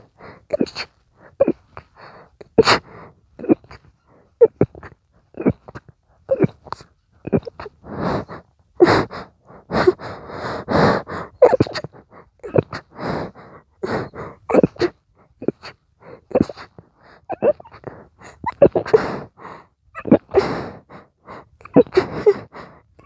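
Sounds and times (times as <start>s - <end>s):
gasping in-breaths: 0.0s - 23.0s
person stifling sneezes: 0.5s - 1.8s, 2.5s - 7.7s, 11.4s - 12.9s, 14.5s - 19.2s.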